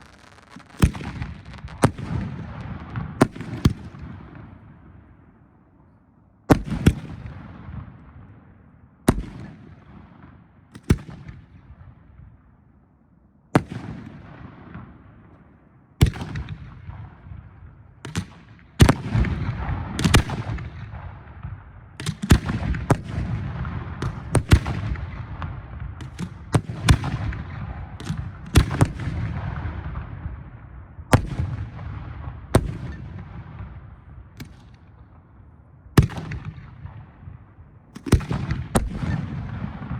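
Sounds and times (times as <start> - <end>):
firework shells booming: 0.0 - 4.4.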